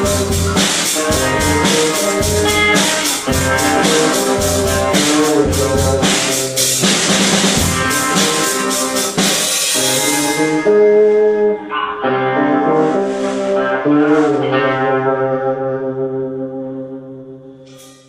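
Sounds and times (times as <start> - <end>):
drum kit beat: 0.0 - 11.6, 12.2 - 14.5
rock band playing: 0.0 - 17.4.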